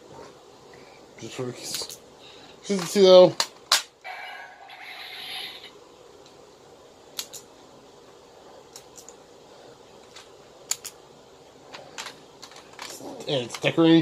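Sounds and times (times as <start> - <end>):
sharp plastic clicks: 7.2 - 7.5, 10.1 - 11.0.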